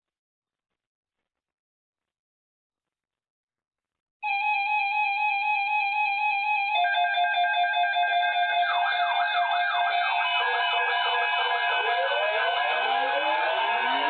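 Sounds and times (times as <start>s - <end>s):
steady wavering alarm tone: 4.3s - 14.0s
rising and falling siren sweeps: 6.8s - 14.0s.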